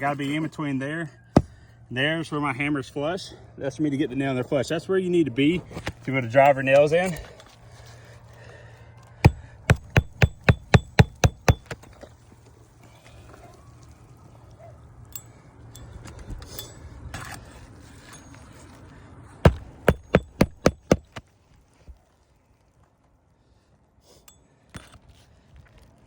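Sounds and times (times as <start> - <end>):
hammer striking nails: 1.4 - 1.6, 9.2 - 11.8, 19.4 - 21.2.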